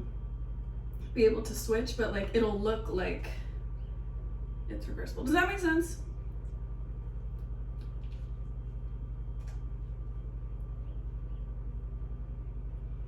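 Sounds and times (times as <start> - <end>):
pulsing mechanical hum: 0.0 - 13.0.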